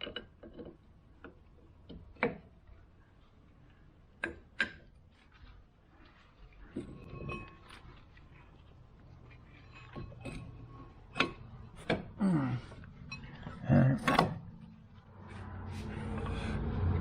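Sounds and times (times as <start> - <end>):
low steady rumble: 5.9 - 17.0
hand tools and metal clanking: 6.5 - 16.4.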